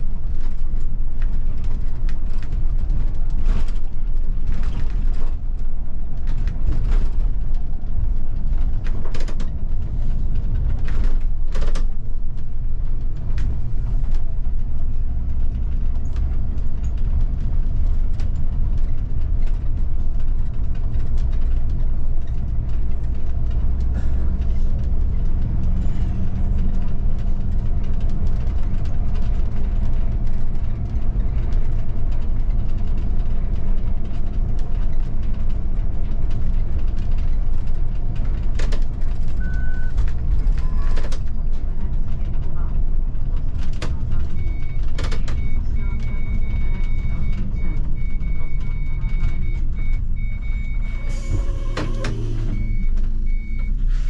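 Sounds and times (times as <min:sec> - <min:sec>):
bus engine and road rumble: 0:00.0 - 0:54.0.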